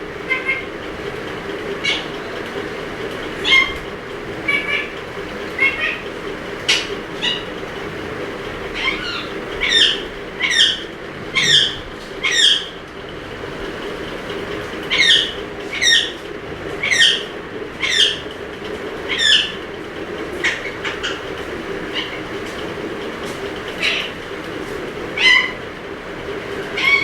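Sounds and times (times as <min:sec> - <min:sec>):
steady low hum: 0:00.0 - 0:27.0
parrot screeching: 0:00.2 - 0:00.7, 0:01.8 - 0:02.1, 0:03.4 - 0:03.8, 0:04.4 - 0:06.0, 0:06.7 - 0:07.4, 0:08.7 - 0:12.8, 0:14.9 - 0:16.2, 0:16.8 - 0:18.2, 0:19.1 - 0:19.6, 0:20.4 - 0:21.2, 0:21.9 - 0:22.2, 0:23.8 - 0:24.2, 0:25.2 - 0:25.6, 0:26.8 - 0:27.0.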